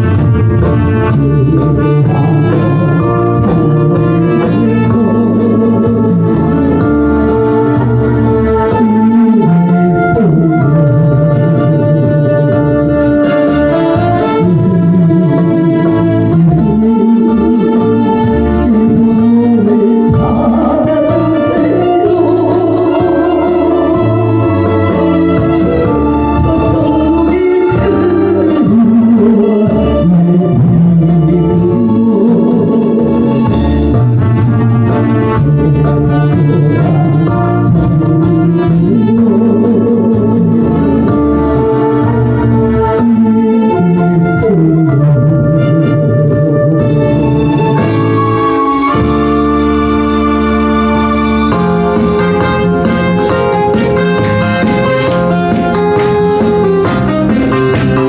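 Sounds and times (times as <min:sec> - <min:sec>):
instrumental music with held chords: 0:00.0 - 0:58.0
light steady beat: 0:51.6 - 0:58.0.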